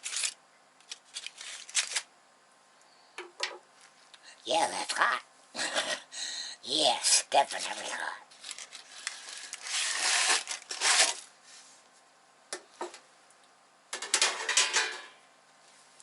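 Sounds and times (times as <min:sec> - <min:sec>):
baking sheet rustling and scraping: 0:00.0 - 0:02.1, 0:08.3 - 0:11.9.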